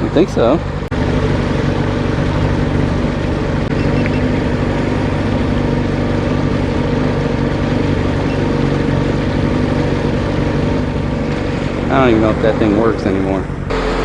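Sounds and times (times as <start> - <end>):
outboard motor running: 0.0 - 14.0.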